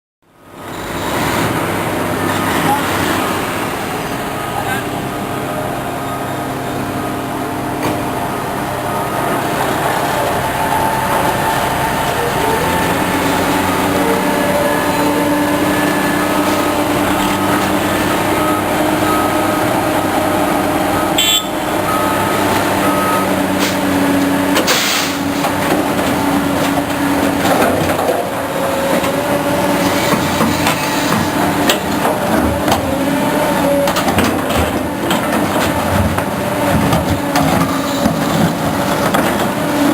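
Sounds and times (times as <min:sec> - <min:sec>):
excavator diesel engine: 0:00.2 - 0:39.9.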